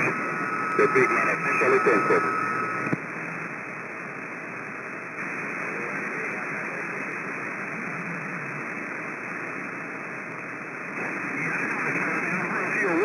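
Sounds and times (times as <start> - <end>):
radio static hiss: 0.0 - 3.6, 10.9 - 13.0.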